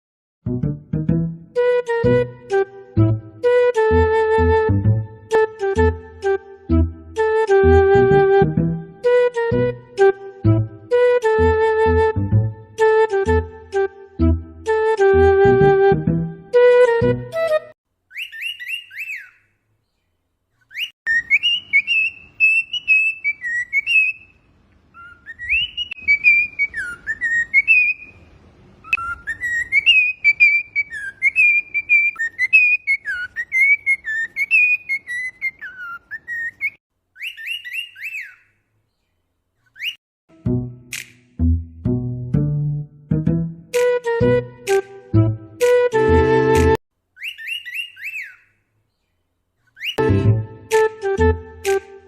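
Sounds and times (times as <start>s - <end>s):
cockatiel whistling a song: 18.1s - 19.5s, 20.7s - 38.5s, 39.8s - 40.0s, 47.2s - 48.5s, 49.8s - 50.0s.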